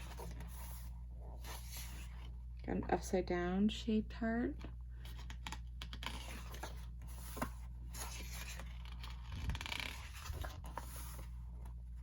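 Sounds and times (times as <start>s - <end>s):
paper pages rustling and turning: 0.0s - 2.4s, 5.0s - 12.0s.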